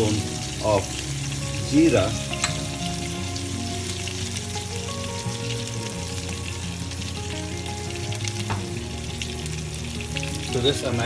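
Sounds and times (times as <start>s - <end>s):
background music: 0.0s - 11.0s
seeds sizzling in hot oil: 0.0s - 11.0s.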